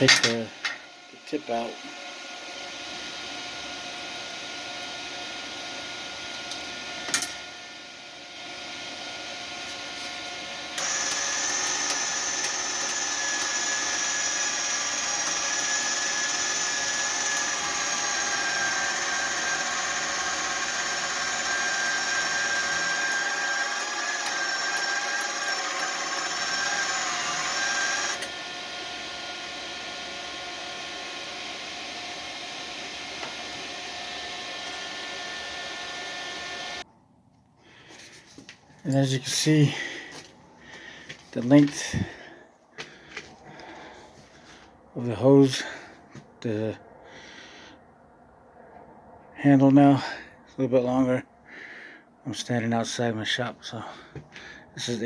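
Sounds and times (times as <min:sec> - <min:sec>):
welder wire-feed motor whine: 0:00.0 - 0:36.9.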